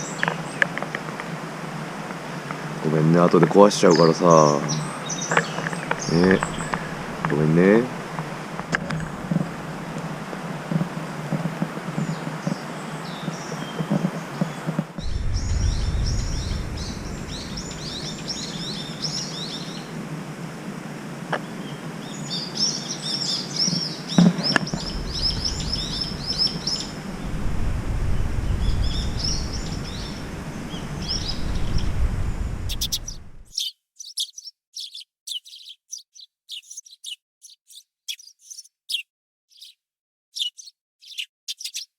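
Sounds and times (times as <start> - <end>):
small birds chirping: 0.0 - 0.8, 2.5 - 20.0, 21.3 - 41.9
low uneven rumbling: 4.8 - 12.1, 15.0 - 20.1, 24.6 - 33.5.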